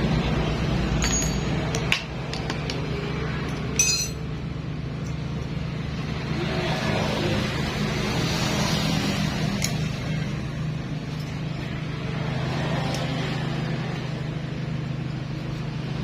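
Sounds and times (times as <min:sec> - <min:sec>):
metal tools clinking: 0:01.0 - 0:02.0, 0:03.4 - 0:04.3.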